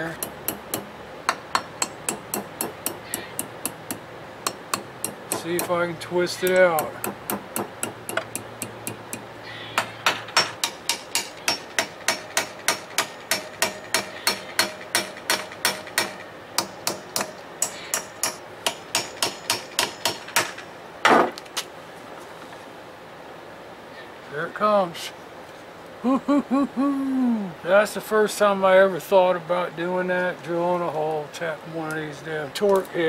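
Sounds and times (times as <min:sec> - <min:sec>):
hammer tapping on metal: 0:00.0 - 0:05.8, 0:06.4 - 0:20.6.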